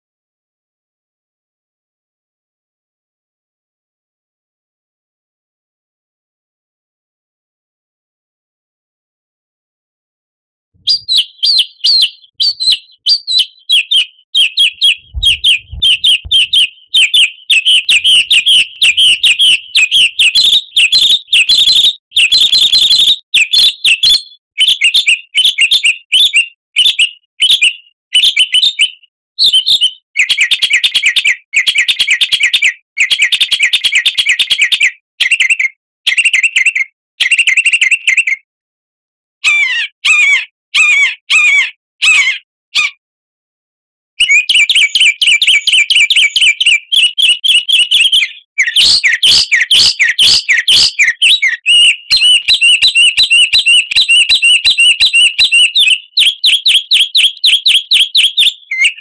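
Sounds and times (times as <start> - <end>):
songbird chirping and trilling: 10.8 - 38.4, 39.5 - 42.4, 44.2 - 59.0
short low thud: 14.8 - 16.7.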